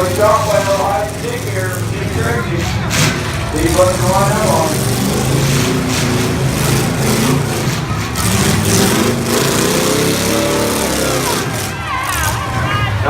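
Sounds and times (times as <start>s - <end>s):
car accelerating: 0.0s - 13.0s
car engines revving: 0.0s - 13.0s.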